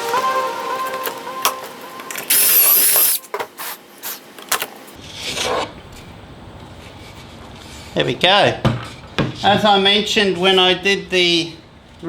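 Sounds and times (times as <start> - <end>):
background music: 0.0 - 3.1
cordless drill whining: 2.1 - 3.2.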